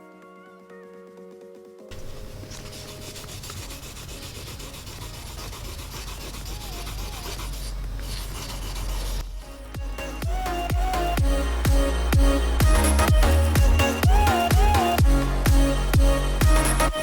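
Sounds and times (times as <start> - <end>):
sandpaper rubbing on plastic: 1.9 - 9.2.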